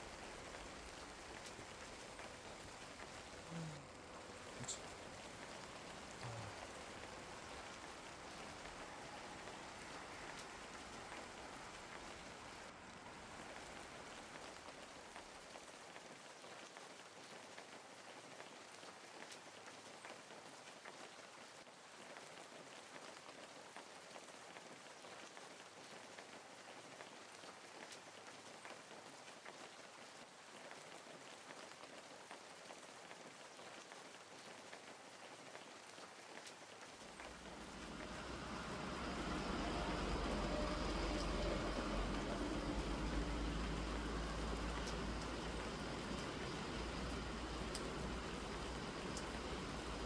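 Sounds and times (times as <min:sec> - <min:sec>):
light rain patter: 0:00.0 - 0:50.0
water drips: 0:37.2 - 0:50.0.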